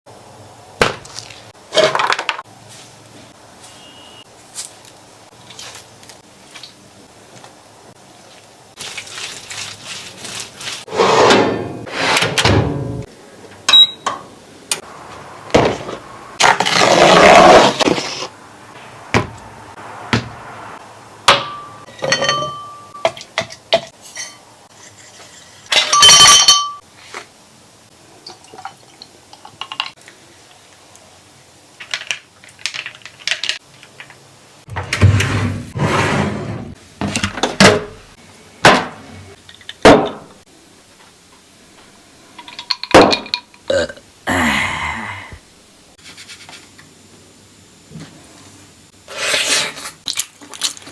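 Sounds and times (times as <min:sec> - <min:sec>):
dishes and utensils clinking: 0:21.3 - 0:26.8.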